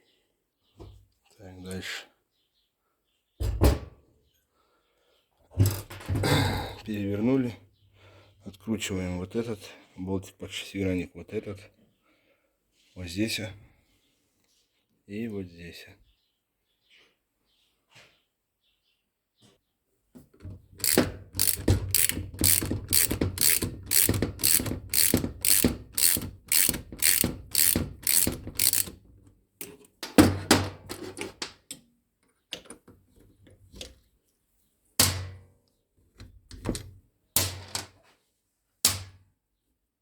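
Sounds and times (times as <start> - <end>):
tool and parts knocking: 20.4 - 29.0
ratchet wrench clicking: 20.8 - 29.0.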